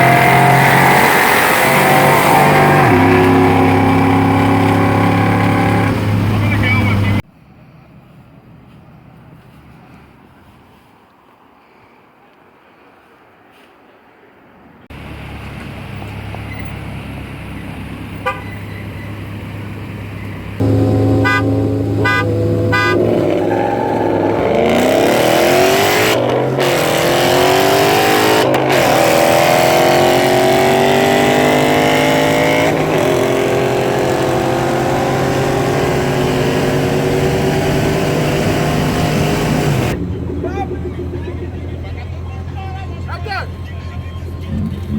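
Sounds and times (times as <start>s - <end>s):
car engines revving: 0.0s - 7.2s, 14.9s - 44.9s
cars accelerating at full throttle: 0.0s - 7.2s, 14.9s - 44.9s
car horn honking: 18.2s - 18.8s, 20.6s - 26.1s.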